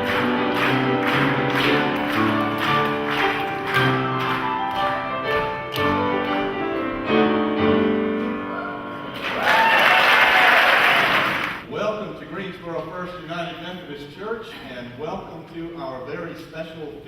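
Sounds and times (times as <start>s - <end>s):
congregation applauding: 0.0s - 6.4s, 9.1s - 11.7s
keyboard sustained chords: 0.0s - 8.5s.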